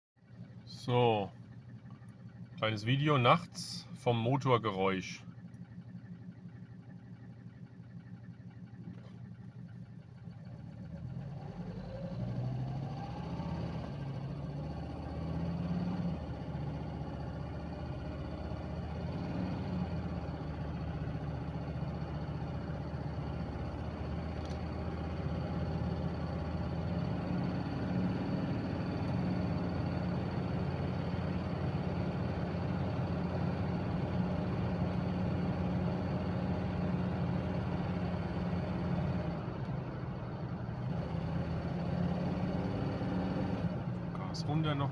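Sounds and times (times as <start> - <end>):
diesel engine running: 0.2 - 44.9
turbo whine: 0.3 - 13.3.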